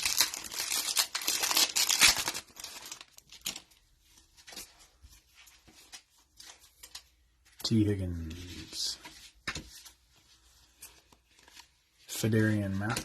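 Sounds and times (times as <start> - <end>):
plastic wrapper tearing and crinkling: 0.0 - 3.8.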